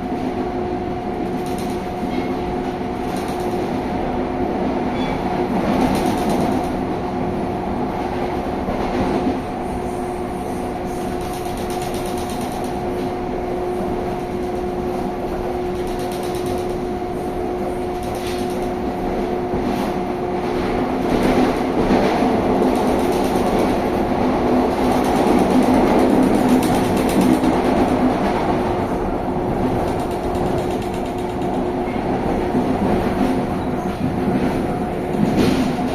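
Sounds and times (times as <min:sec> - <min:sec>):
train running gear rumble: 0:00.0 - 0:35.9.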